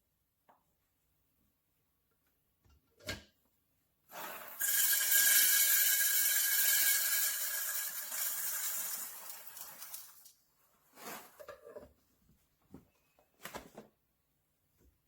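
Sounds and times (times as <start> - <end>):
coffee grinder grinding: 4.1 - 10.2.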